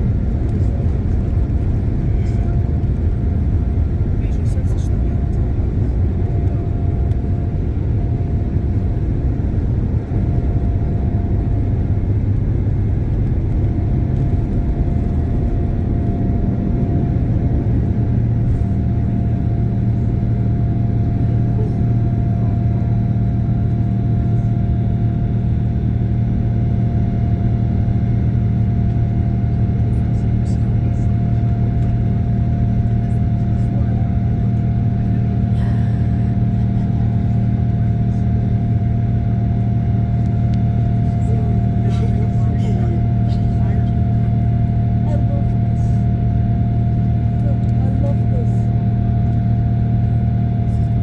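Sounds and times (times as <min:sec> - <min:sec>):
jet engines at takeoff power: 0:00.0 - 0:51.0
low hum: 0:00.0 - 0:51.0.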